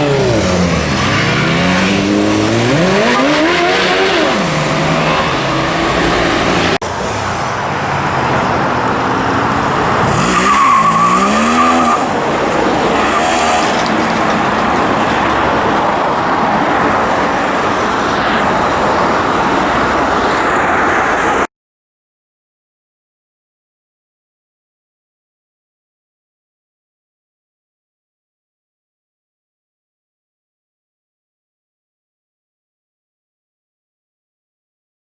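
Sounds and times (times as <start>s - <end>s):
motorcycle engine revving: 0.0s - 16.2s
steady rush of noise: 0.0s - 21.5s.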